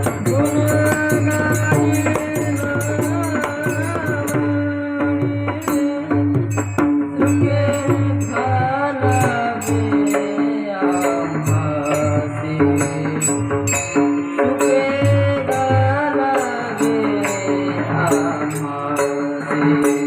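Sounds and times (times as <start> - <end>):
person singing devotional melody: 0.0 - 20.0
small hand cymbals: 0.0 - 20.0.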